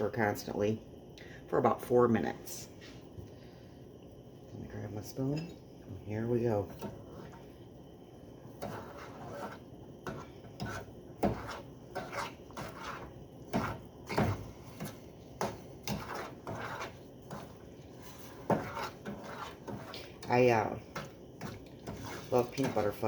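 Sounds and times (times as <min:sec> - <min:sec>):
spoon scraping and knocking pan: 0:06.4 - 0:07.6, 0:08.4 - 0:23.0.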